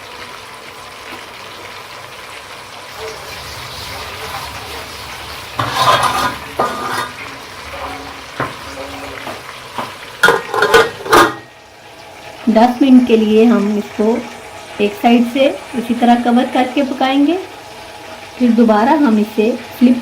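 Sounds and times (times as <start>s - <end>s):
chicken sizzling in hot oil: 0.0s - 20.0s
metal cookware clattering: 5.5s - 11.6s.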